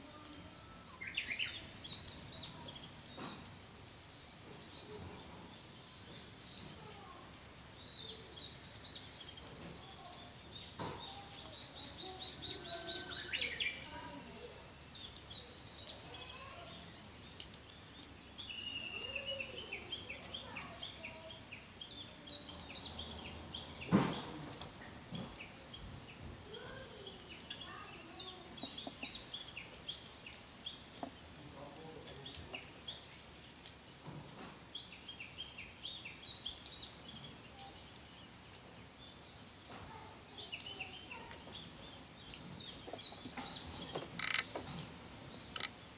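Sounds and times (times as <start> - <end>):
bird chirps and trills: 4.0 - 25.8, 26.4 - 31.5, 34.7 - 45.9
sharp thump: 23.9 - 24.4
frogs calling: 43.9 - 44.6, 45.4 - 45.9.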